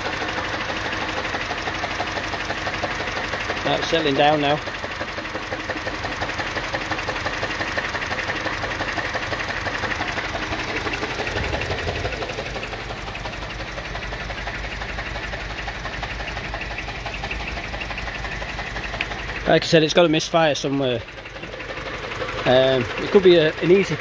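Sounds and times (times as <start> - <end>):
car engine idling: 0.0 - 24.0.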